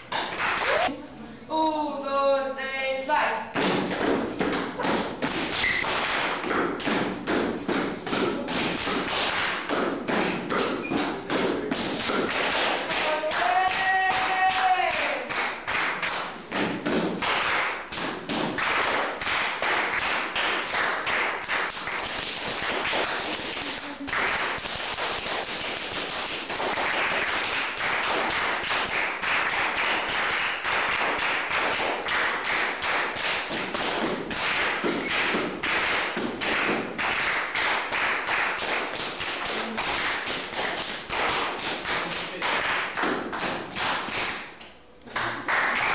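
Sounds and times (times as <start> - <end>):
claps taps and stomps: 3.6 - 44.5
person calling out: 13.0 - 15.2.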